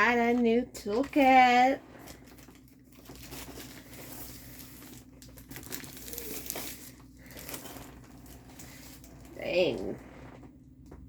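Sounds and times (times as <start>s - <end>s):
plastic packaging crinkling: 0.3s - 10.4s.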